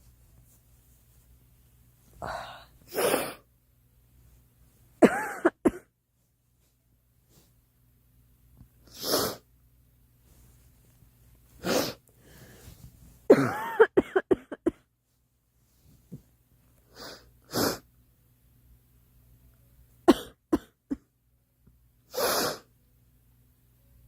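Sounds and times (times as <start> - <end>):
girl coughing: 5.0 - 5.9, 13.3 - 14.8, 20.1 - 21.1.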